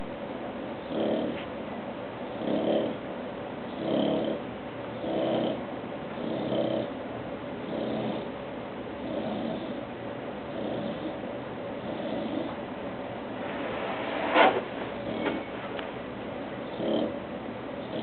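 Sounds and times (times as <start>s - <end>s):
dog snoring: 0.8s - 1.5s, 2.3s - 3.0s, 3.7s - 7.0s, 7.6s - 8.4s, 9.0s - 9.9s, 10.5s - 11.2s, 11.8s - 12.6s, 16.6s - 17.2s, 17.8s - 18.0s.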